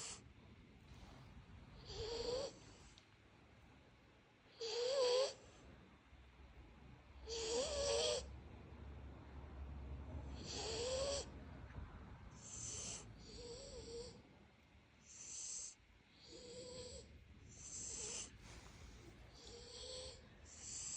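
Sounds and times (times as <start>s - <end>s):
puppy snoring: 0.0s - 0.3s, 1.8s - 3.0s, 4.5s - 5.6s, 7.2s - 8.3s, 10.2s - 11.4s, 12.4s - 14.3s, 15.0s - 20.9s.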